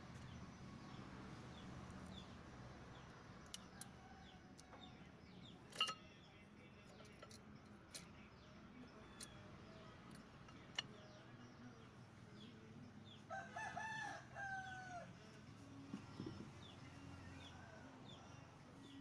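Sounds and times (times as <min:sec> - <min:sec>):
metallic clinks: 0:05.7 - 0:06.0.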